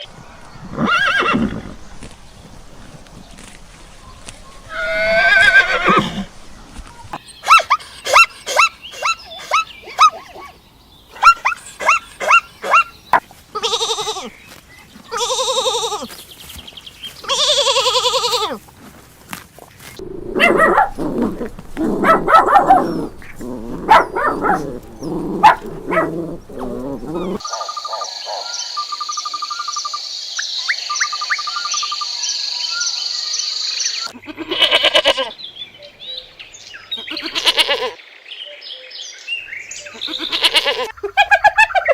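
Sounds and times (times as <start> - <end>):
long wavering animal calls: 20.0 - 27.4
low animal calls: 20.0 - 27.4.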